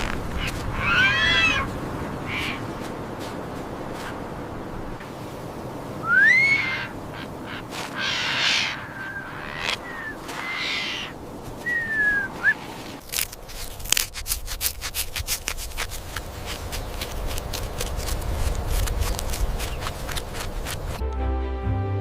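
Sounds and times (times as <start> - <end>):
crackling and rustling clicks: 0.0 - 0.7, 13.0 - 21.0
falling whistled glide: 6.0 - 6.9, 8.3 - 12.6
whistled call: 6.0 - 6.9, 8.0 - 12.6
soft music: 21.0 - 22.0.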